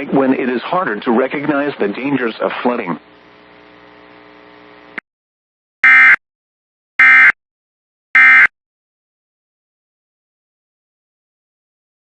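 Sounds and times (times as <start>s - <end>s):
faint broadcast hum: 0.0s - 5.0s.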